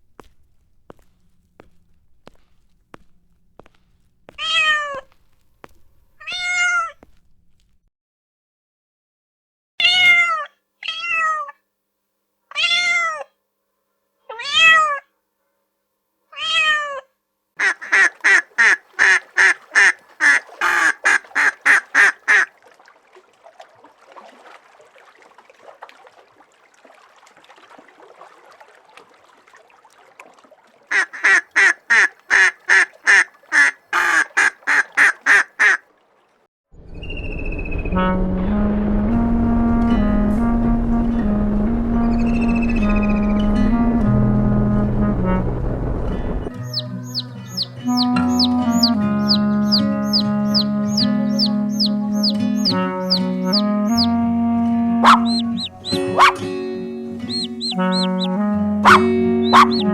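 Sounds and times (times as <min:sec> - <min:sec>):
cat meowing: 0:04.4 - 0:05.1, 0:06.2 - 0:07.0, 0:09.8 - 0:11.6, 0:12.5 - 0:13.3, 0:14.3 - 0:15.0, 0:16.3 - 0:17.1.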